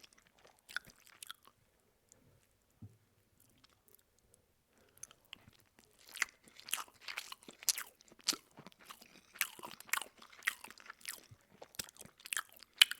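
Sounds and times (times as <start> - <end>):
person chewing food: 0.0 - 1.6, 3.4 - 12.9.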